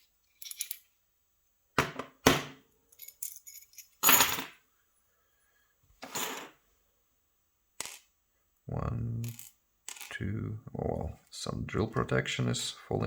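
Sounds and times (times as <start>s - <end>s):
small metal parts clicking: 9.2s - 10.1s.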